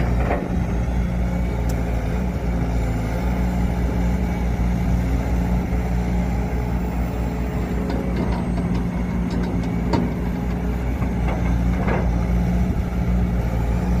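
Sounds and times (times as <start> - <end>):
heavy diesel engine running: 0.0 - 14.0
sharp knocks and clatters: 7.8 - 12.2.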